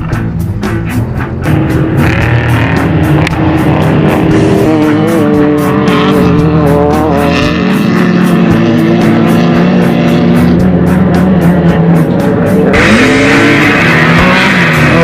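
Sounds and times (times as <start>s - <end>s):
music with steady beat: 0.0s - 15.0s
race engines at high revs: 0.0s - 15.0s.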